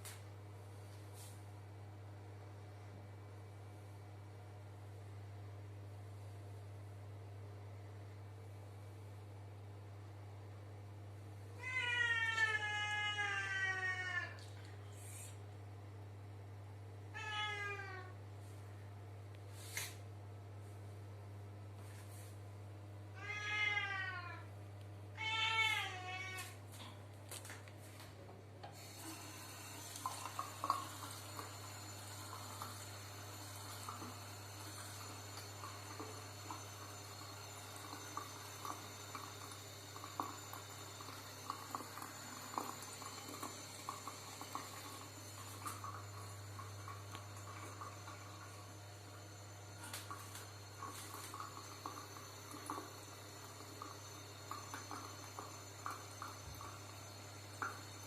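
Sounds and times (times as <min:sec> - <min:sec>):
low steady hum: 0:00.0 - 0:58.0
cat meowing: 0:11.6 - 0:14.4, 0:17.2 - 0:18.1, 0:23.2 - 0:24.5, 0:25.2 - 0:26.5.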